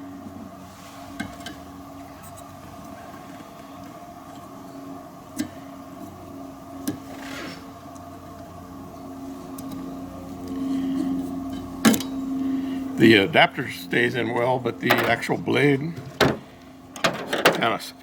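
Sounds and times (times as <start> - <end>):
steady background hum: 0.0 - 18.0
plastic parts rustling: 17.0 - 17.6.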